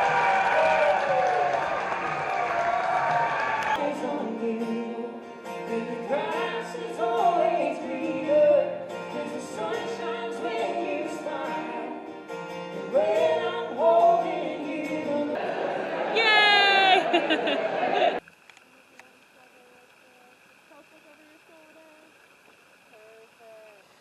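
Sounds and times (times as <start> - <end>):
person singing a melody: 3.8 - 12.1.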